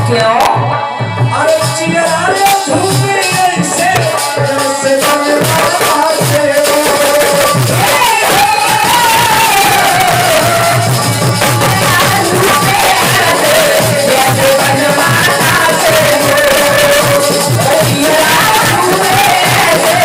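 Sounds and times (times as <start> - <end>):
hand drum beat: 0.0 - 20.0.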